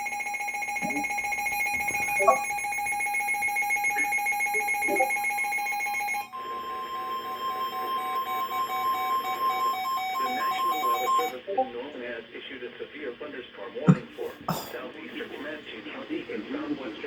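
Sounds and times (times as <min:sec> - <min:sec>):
beeping second tone: 0:00.0 - 0:11.7
weather alert radio alarm tone: 0:00.0 - 0:11.7.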